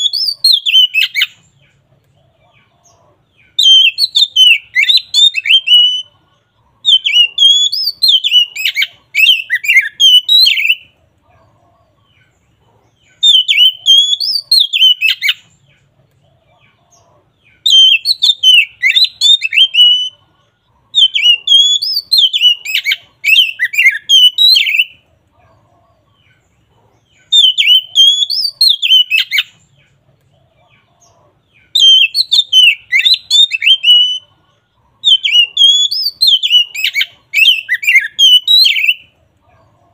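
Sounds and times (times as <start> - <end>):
magpie-robin singing whistled phrases: 0.0 - 1.5, 3.4 - 6.2, 6.8 - 11.0, 13.1 - 15.6, 17.4 - 20.2, 20.9 - 25.0, 27.1 - 29.7, 31.6 - 34.4, 35.0 - 39.2.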